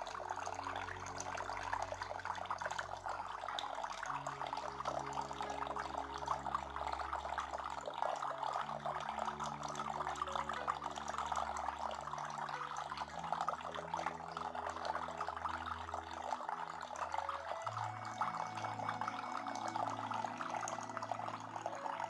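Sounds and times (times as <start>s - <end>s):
fountain water trickling: 0.0s - 22.0s.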